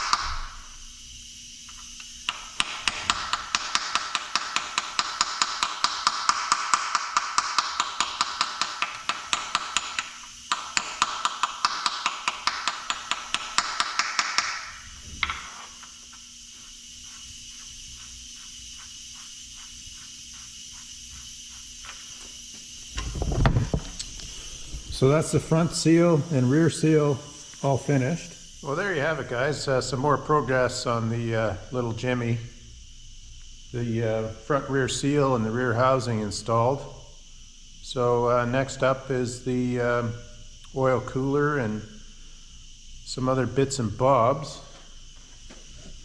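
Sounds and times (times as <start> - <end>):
metal-on-metal tapping: 2.3 - 15.6.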